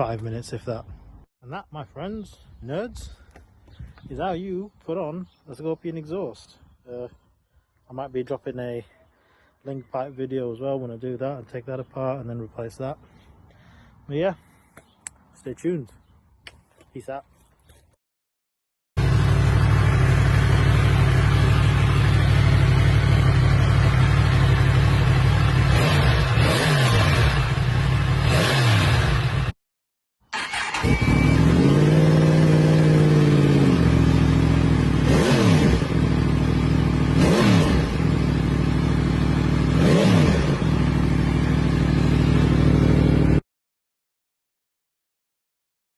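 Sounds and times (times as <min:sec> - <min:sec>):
motorcycle engine revving: 0:19.0 - 0:29.6, 0:30.4 - 0:43.4.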